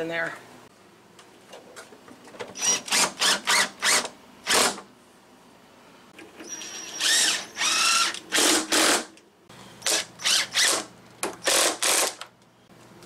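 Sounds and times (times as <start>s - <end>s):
power drill bursts: 2.6s - 4.8s, 6.4s - 9.1s, 9.8s - 12.2s.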